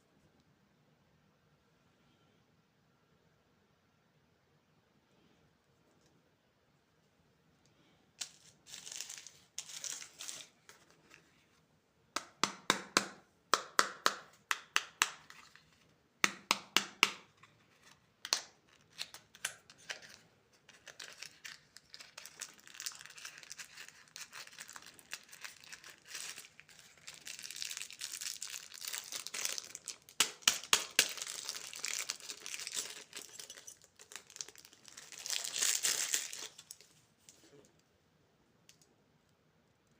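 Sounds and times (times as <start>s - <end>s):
plastic wrappers crinkling: 8.2s - 11.4s, 17.2s - 37.6s.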